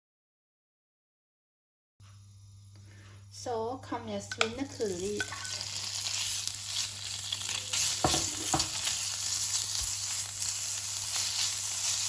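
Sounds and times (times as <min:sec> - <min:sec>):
meat sizzling in oil: 0:04.2 - 0:12.0
utensil knocking on pan: 0:04.3 - 0:04.6, 0:08.0 - 0:08.8.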